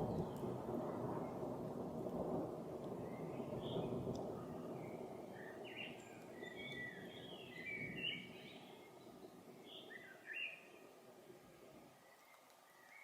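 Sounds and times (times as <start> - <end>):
distant thunder rumble: 0.0 - 9.8
songbird chirping: 2.8 - 13.0.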